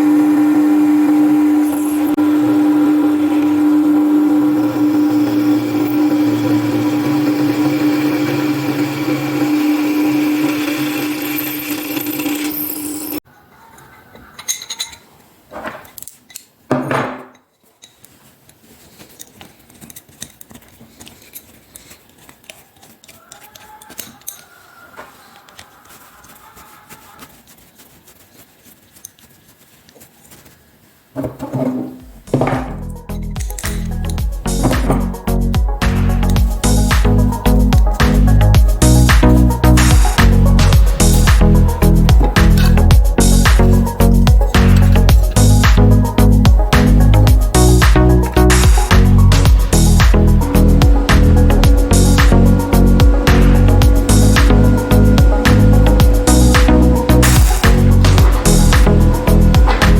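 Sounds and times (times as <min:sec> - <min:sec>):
electric power tool motor: 0:00.0 - 0:13.2, 0:33.5 - 0:59.9
handling knocks and clicks: 0:14.2 - 0:26.4, 0:31.2 - 0:35.3, 0:42.1 - 0:45.8.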